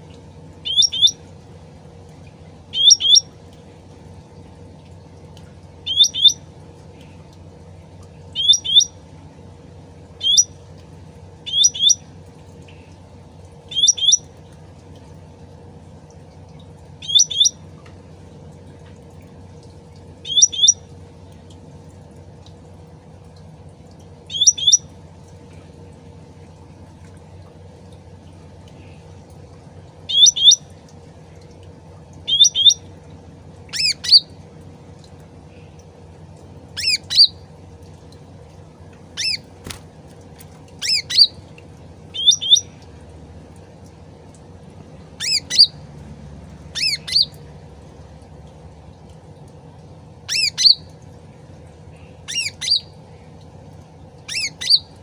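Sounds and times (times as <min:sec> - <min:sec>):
bird chirping: 0:00.6 - 0:01.2, 0:02.7 - 0:03.3, 0:05.9 - 0:06.4, 0:08.4 - 0:09.0, 0:10.2 - 0:10.6, 0:11.5 - 0:12.0, 0:13.7 - 0:14.3, 0:17.0 - 0:17.6, 0:20.2 - 0:20.8, 0:24.3 - 0:24.8, 0:30.1 - 0:30.6, 0:32.3 - 0:32.8, 0:33.7 - 0:34.3, 0:36.8 - 0:37.4, 0:39.2 - 0:39.5, 0:40.8 - 0:41.4, 0:42.1 - 0:42.7, 0:45.2 - 0:45.8, 0:46.8 - 0:47.4, 0:50.3 - 0:50.9, 0:52.3 - 0:52.9, 0:54.3 - 0:54.9.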